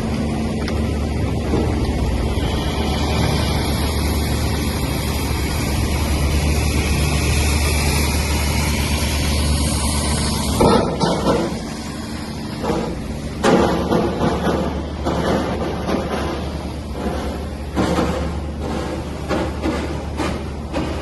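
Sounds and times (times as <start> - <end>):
steam locomotive rumbling: 0.0 - 21.0
steam hiss: 2.2 - 13.3.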